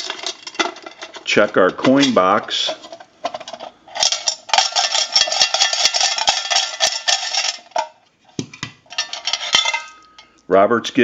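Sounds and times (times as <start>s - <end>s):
coins rattling in metal box: 2.0s - 7.9s.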